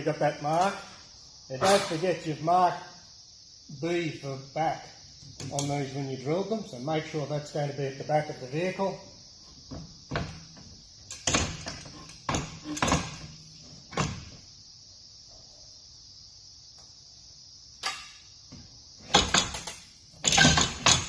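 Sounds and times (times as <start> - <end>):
metal crossbars knocking and clunking: 9.7 - 14.4, 19.0 - 21.0.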